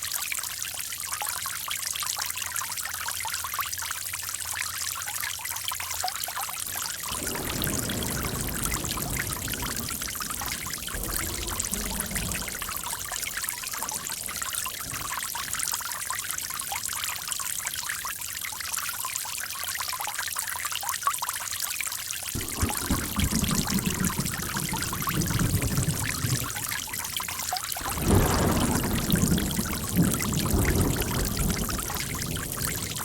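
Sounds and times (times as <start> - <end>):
water splashing and trickling: 0.0 - 33.0
deep rush of water: 6.6 - 18.0, 22.4 - 33.0.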